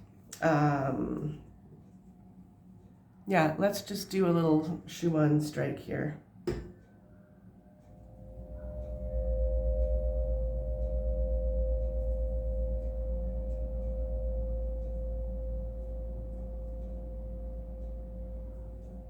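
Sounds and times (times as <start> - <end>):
tuning forks ringing: 7.6 - 19.0.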